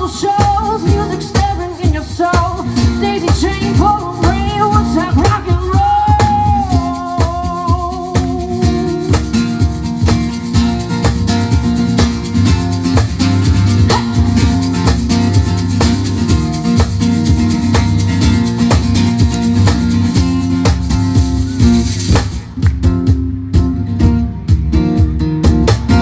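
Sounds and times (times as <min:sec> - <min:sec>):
live country band playing: 0:00.0 - 0:26.0.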